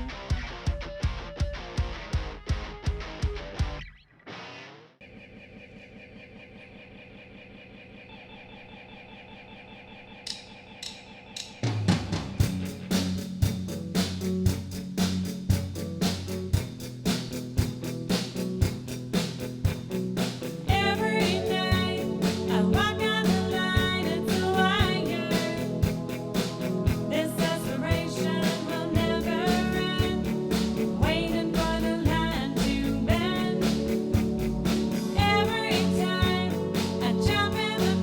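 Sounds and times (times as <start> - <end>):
drum kit beat: 0.0 - 3.9, 10.3 - 38.0
bass guitar: 0.0 - 4.0, 12.1 - 38.0
electric guitar playing: 0.0 - 4.9, 15.5 - 38.0
melodic line with sliding notes: 20.7 - 38.0.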